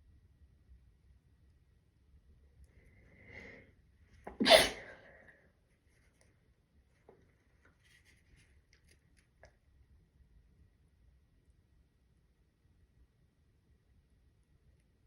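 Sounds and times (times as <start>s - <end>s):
person sneezing: 4.3s - 5.2s.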